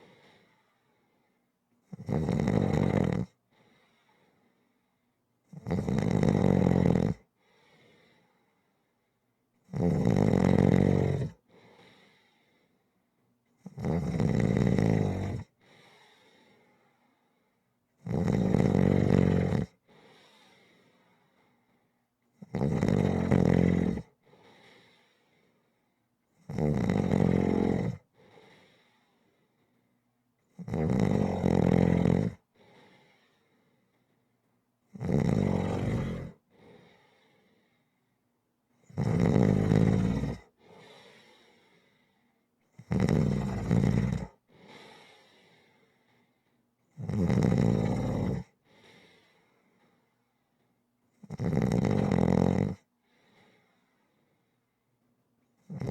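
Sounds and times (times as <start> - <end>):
faint breath: 0.0 - 1.5, 3.4 - 5.2, 7.3 - 9.3, 11.4 - 13.3, 15.5 - 17.7, 19.8 - 22.0, 24.2 - 26.1, 28.0 - 30.1, 32.5 - 34.4, 35.9 - 38.3, 40.4 - 42.5, 44.4 - 46.7, 48.5 - 50.8, 52.9 - 54.8
person snoring: 1.9 - 3.3, 5.6 - 7.2, 9.7 - 11.4, 13.6 - 15.5, 18.0 - 19.8, 22.4 - 24.1, 26.5 - 28.0, 30.6 - 32.4, 35.0 - 36.4, 38.9 - 41.1, 42.8 - 45.1, 47.0 - 48.5, 51.2 - 52.8, 55.7 - 55.9.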